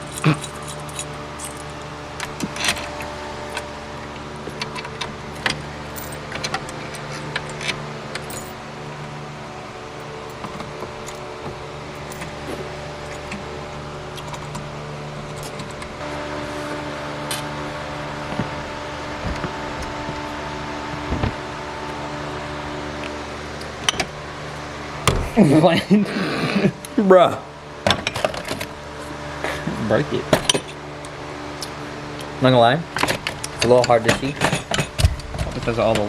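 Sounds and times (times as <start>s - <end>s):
hand tools clinking: 0.0s - 2.9s, 4.7s - 8.6s
mechanical hum: 0.0s - 36.0s.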